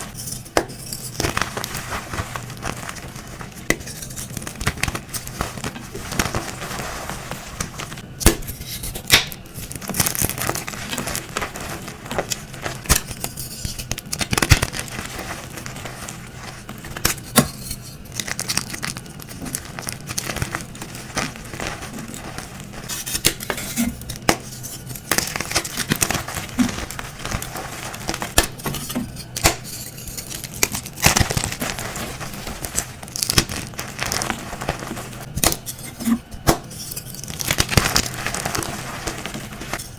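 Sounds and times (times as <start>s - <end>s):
chalk blocks being crushed: 0.0s - 39.9s.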